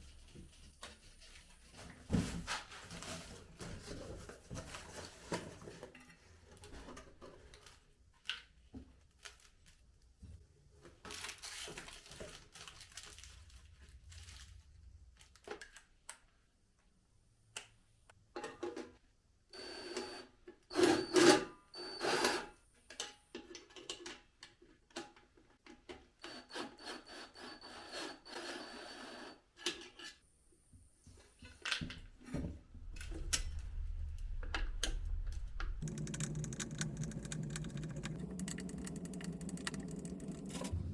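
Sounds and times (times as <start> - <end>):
low hum: 32.5 - 40.9
clicks and knocks: 32.9 - 40.8
hands rubbing and scraping materials: 35.7 - 40.8.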